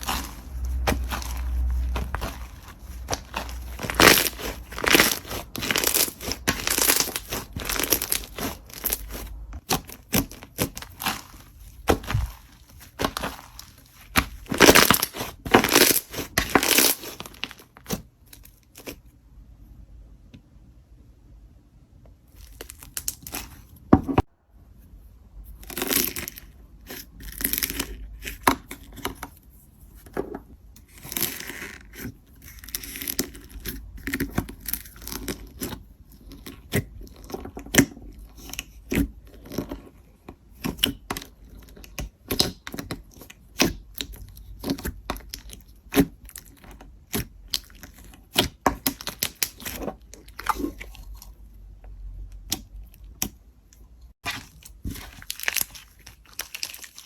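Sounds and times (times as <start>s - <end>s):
slime squishing and popping: 0.0s - 18.1s, 40.4s - 51.4s.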